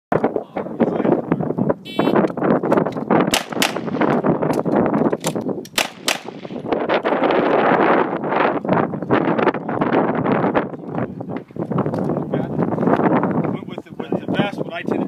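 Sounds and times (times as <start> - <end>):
short high electronic beep: 1.9 - 2.2
handgun shots: 3.3 - 4.6, 5.2 - 6.6.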